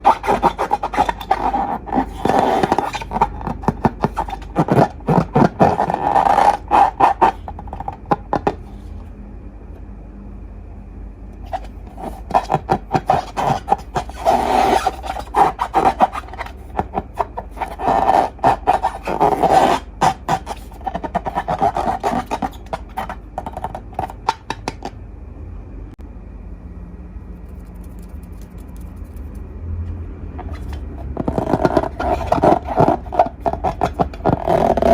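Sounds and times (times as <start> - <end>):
hands scraping slime and balloons: 0.0 - 9.0, 11.4 - 25.0, 30.4 - 34.9.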